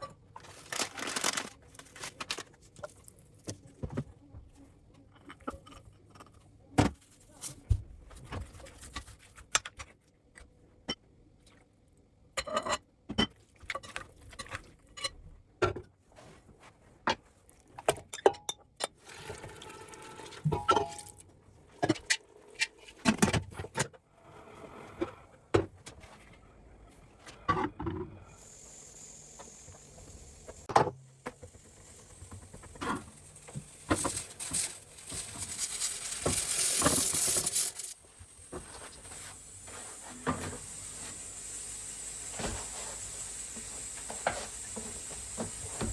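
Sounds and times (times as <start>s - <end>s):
dishes and utensils clinking: 20.5s - 21.2s
steady hiss: 31.5s - 45.9s.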